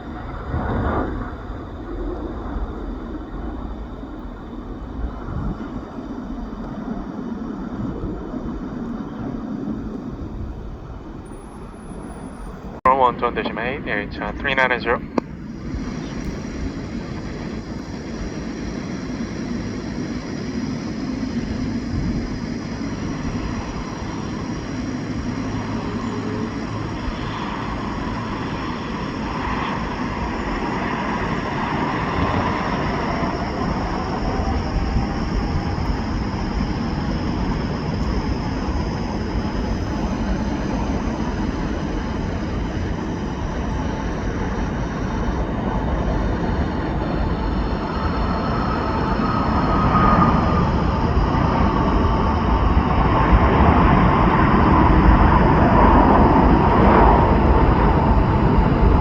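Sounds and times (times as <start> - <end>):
jet engine roar: 0.0 - 59.0.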